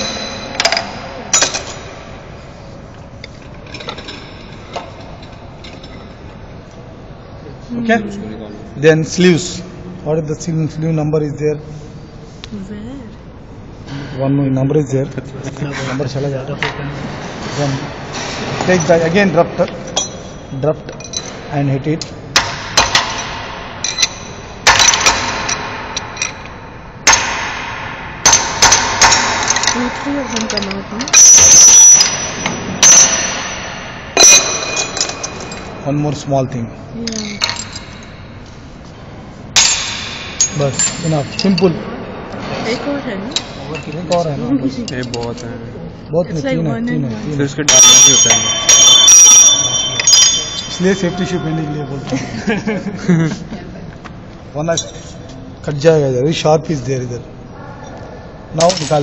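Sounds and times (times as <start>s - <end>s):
metal striking metal: 0.0s - 2.4s, 17.8s - 38.8s, 39.5s - 44.3s, 47.6s - 52.0s.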